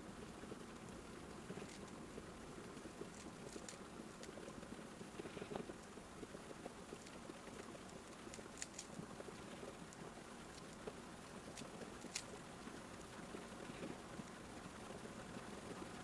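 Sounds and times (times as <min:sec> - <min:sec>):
puzzle cube plastic clicks: 0:03.1 - 0:04.3, 0:08.3 - 0:09.0.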